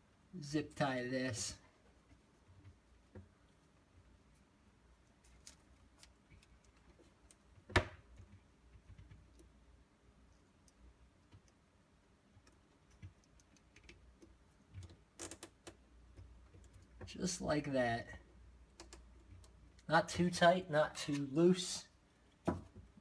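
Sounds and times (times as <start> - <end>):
cable tie clicking: 12.4 - 17.0.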